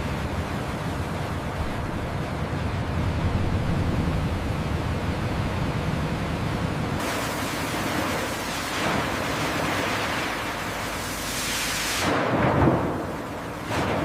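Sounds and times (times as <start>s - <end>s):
low rumble: 0.0s - 7.0s.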